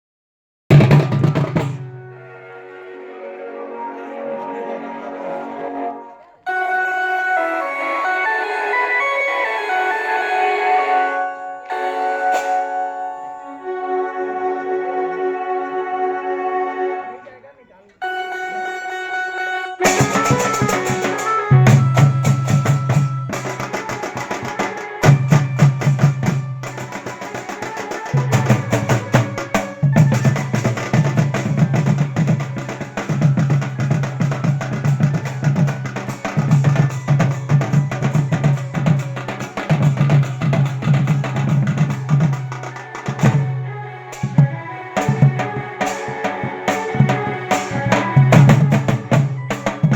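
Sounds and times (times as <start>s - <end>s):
dense drumming: 0.7s - 2.2s
live band playing instrumental: 0.7s - 16.7s, 18.0s - 49.9s
held keyboard note: 1.9s - 17.2s, 18.0s - 24.3s.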